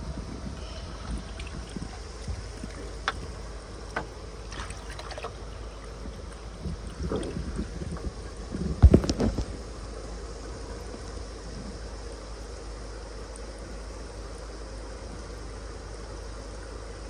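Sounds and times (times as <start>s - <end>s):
wind rumbling on microphone: 0.0s - 12.0s.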